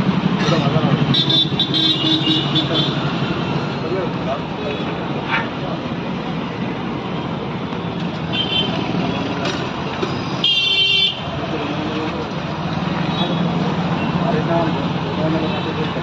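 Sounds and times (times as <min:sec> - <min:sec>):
roadside traffic noise: 0:00.0 - 0:16.0
vehicle horn honking: 0:01.1 - 0:03.0, 0:08.3 - 0:08.9, 0:10.4 - 0:11.2.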